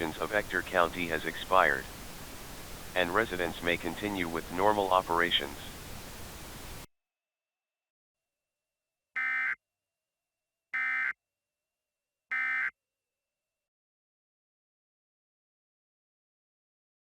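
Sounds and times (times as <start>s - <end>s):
static hiss: 0.0s - 6.9s.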